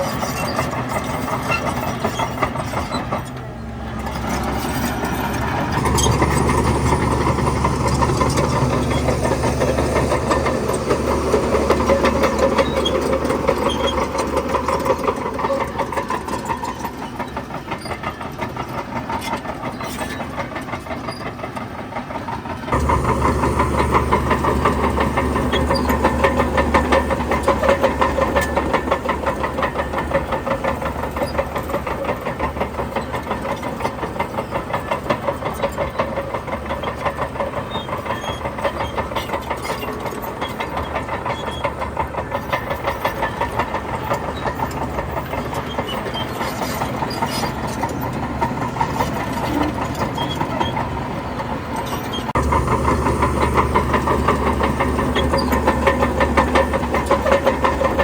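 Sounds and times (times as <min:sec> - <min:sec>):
heavy diesel engine throbbing: 0:00.0 - 0:58.0.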